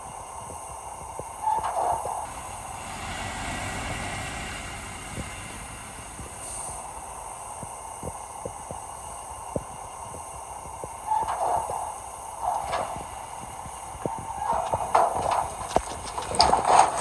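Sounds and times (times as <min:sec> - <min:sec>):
diesel engine rumble: 0:00.0 - 0:17.0
light clicks and knocks: 0:14.0 - 0:17.0
metal clank: 0:14.0 - 0:17.0.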